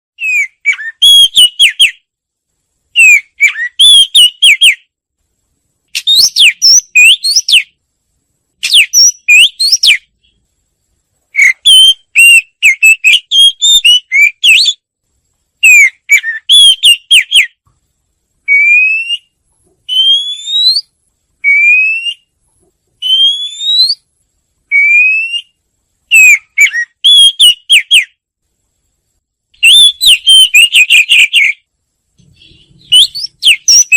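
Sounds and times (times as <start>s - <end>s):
rising whistled bird notes: 0.2s - 2.0s, 3.0s - 4.9s, 6.0s - 7.8s, 8.6s - 10.4s, 11.4s - 14.8s, 15.6s - 17.6s, 18.5s - 22.3s, 23.0s - 24.1s, 24.7s - 28.2s, 29.6s - 31.6s, 32.2s - 33.9s
wagtail chirping song: 0.2s - 2.1s, 2.9s - 4.9s, 5.9s - 7.8s, 8.6s - 10.4s, 11.3s - 14.9s, 15.6s - 17.6s, 18.5s - 22.3s, 23.0s - 24.1s, 24.7s - 28.2s, 29.6s - 33.9s.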